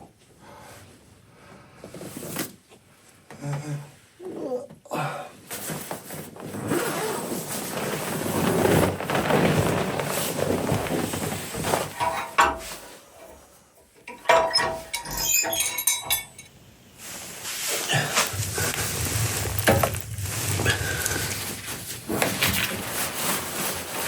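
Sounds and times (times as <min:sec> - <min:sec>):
rustling and handling noise: 0:05.5 - 0:24.0
metal cookware clinking: 0:14.1 - 0:16.6.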